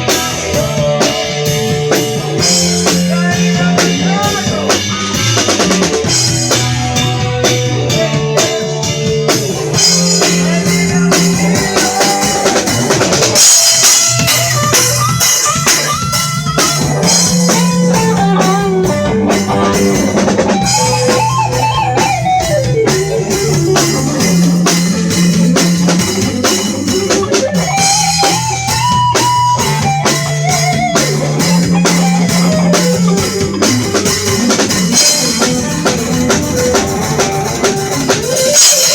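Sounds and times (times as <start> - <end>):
bass line: 0.0 - 38.9
drum kit steady beat: 0.0 - 38.9
guitar: 0.0 - 38.9
sliding lead melody: 0.0 - 38.9.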